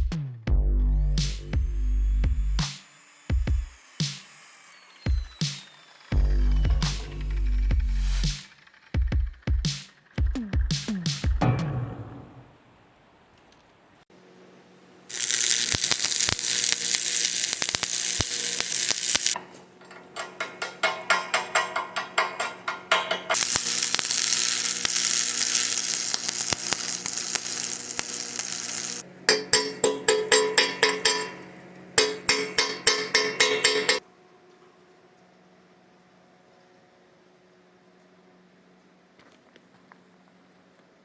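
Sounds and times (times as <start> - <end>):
welding arc sizzling: 15.1 - 34.0.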